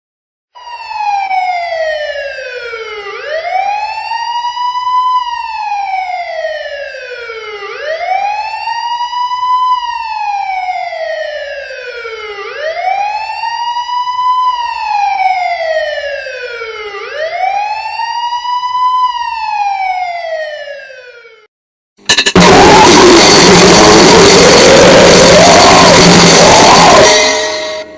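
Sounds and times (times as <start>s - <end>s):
siren wailing in slow sweeps: 0.6s - 21.4s, 22.4s - 27.9s
loud harsh noise music: 22.0s - 27.9s.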